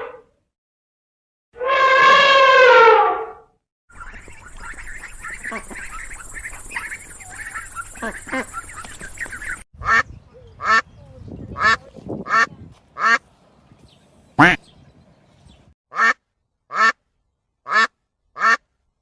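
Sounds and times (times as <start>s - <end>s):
ducks quacking: 3.9s - 10.9s, 11.5s - 13.2s, 14.4s - 14.6s.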